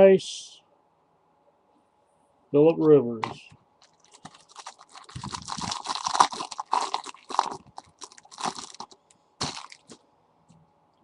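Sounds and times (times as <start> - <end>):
trading cards rustling and scraping: 2.8 - 10.0.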